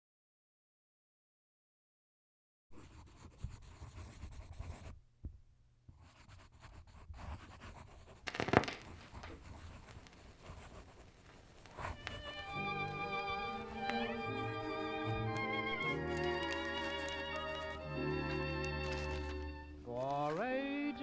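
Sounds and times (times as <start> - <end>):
pen scratching on paper: 2.8 - 5.0, 5.9 - 17.9
violin music: 11.9 - 21.0.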